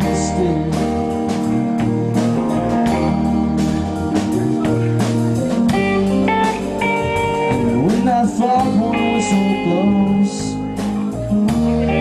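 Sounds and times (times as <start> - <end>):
bass line: 0.0 - 12.0
guitar strumming: 0.0 - 12.0.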